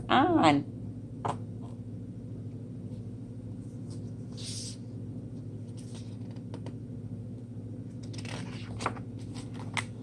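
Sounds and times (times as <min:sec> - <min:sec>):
steady low hum: 0:00.0 - 0:10.0
page turning rustle: 0:03.8 - 0:04.8, 0:05.6 - 0:06.6, 0:08.0 - 0:10.0.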